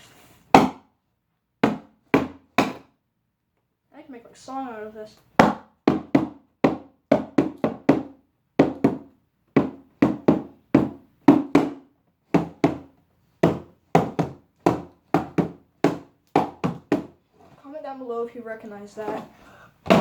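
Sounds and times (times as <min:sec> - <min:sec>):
hand drumming on cardboard box: 0:00.5 - 0:00.9, 0:01.6 - 0:02.9, 0:05.4 - 0:17.2.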